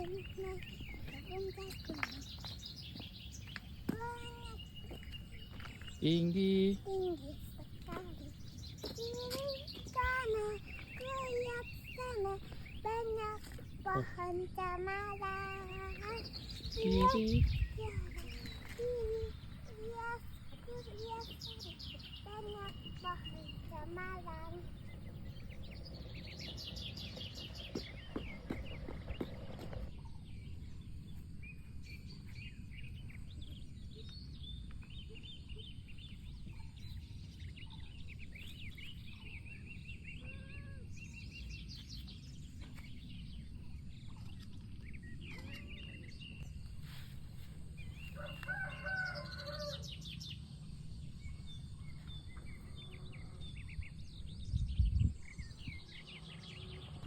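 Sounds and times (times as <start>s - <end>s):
small birds chirping: 0.0s - 57.0s
rooster crowing: 48.2s - 49.9s.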